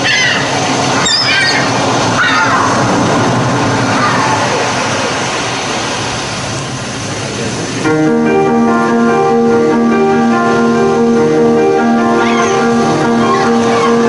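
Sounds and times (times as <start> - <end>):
electronic keyboard chords: 7.8 - 14.0.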